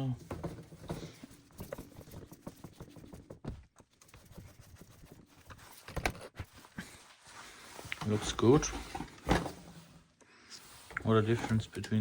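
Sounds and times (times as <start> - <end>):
plastic parts clicking and knocking: 0.0 - 4.0, 5.6 - 6.5.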